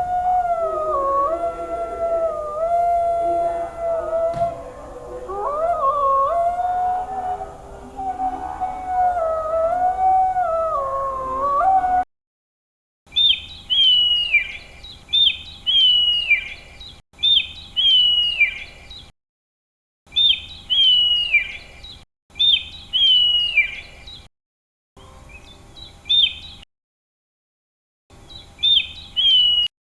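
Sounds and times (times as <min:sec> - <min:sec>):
bird calling with falling whistle: 0:00.0 - 0:12.0
canine howling: 0:00.0 - 0:12.1.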